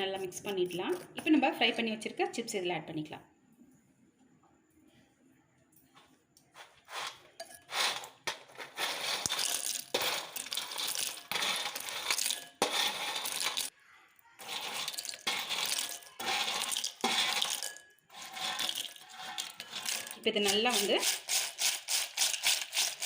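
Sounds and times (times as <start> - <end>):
crisp chips rattling in a bowl: 7.8 - 13.7, 14.4 - 23.0.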